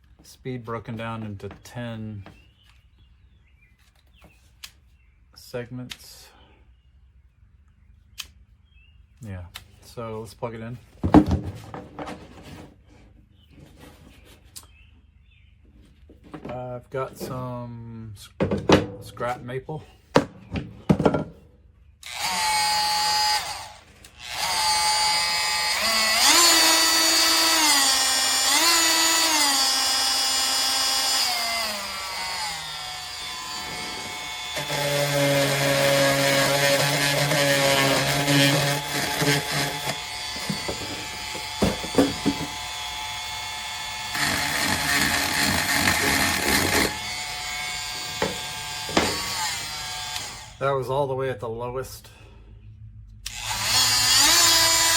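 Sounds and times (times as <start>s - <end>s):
oscillating tool motor whine: 23.2s - 50.6s.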